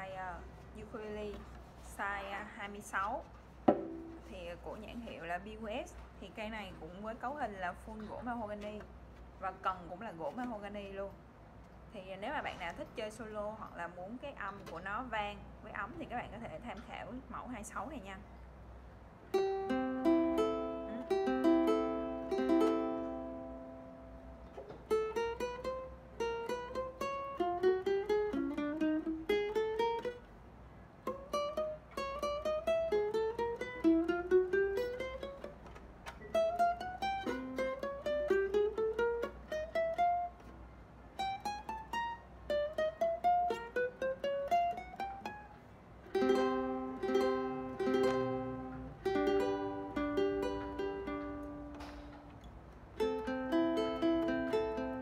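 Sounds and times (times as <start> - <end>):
ukulele chords: 3.6 - 4.3, 19.2 - 55.0
ukulele picked note runs: 3.7 - 4.2.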